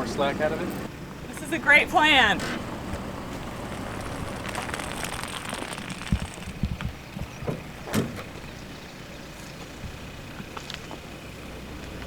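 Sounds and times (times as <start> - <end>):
truck engine idling: 0.0 - 12.0
knocks and crunches: 3.4 - 7.7.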